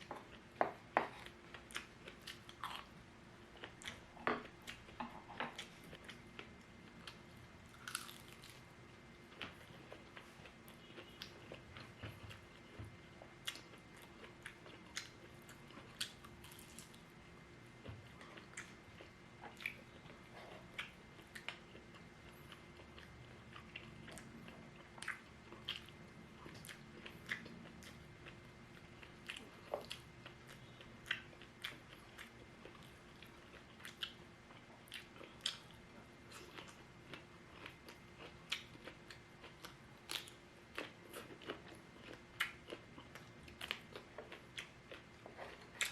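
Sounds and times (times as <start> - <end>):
crisp chewing crunches: 7.0 - 8.7.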